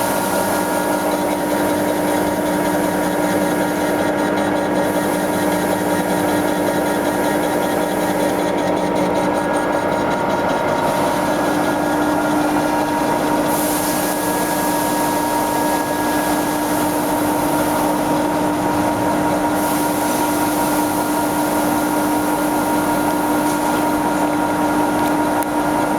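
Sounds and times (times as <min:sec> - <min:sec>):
high machine hiss: 0:00.0 - 0:04.1, 0:10.8 - 0:24.7
lathe machine hum: 0:00.0 - 0:25.9.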